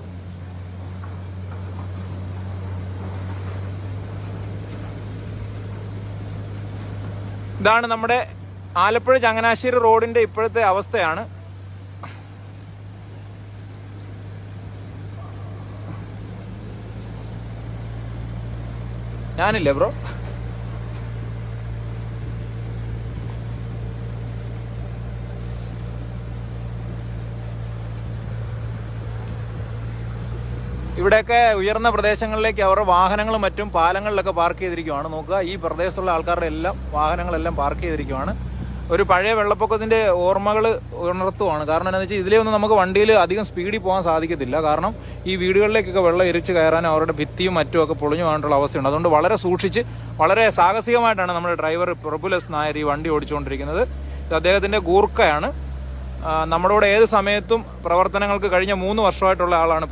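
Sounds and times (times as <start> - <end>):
diesel engine droning: 0.0 - 59.9
water washing around vehicle: 0.0 - 59.9.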